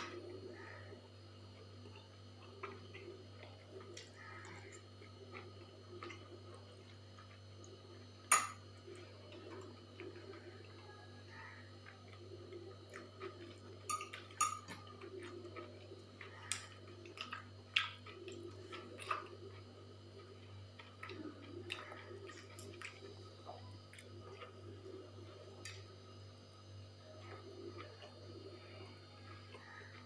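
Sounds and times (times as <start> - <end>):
person chewing: 1.5 - 10.8, 11.8 - 25.9, 27.1 - 30.0
dishes and cutlery clicking: 13.9 - 14.8.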